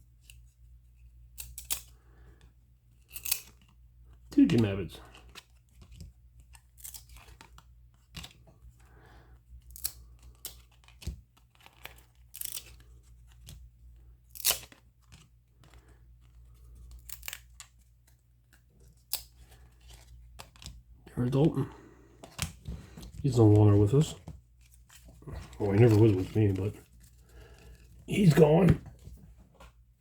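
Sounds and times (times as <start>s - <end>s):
trading cards snapping and sliding: 14.3s - 15.8s.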